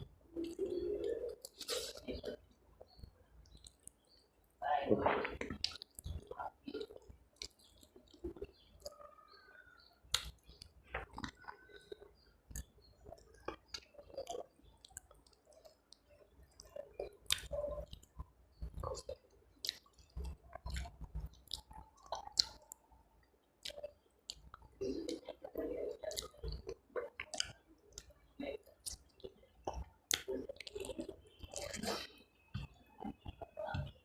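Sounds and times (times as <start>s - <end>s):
person chewing food: 0.0s - 4.4s, 5.1s - 34.0s
wet mouth smacks and clicks: 10.1s - 11.4s, 16.6s - 22.8s, 23.6s - 28.1s.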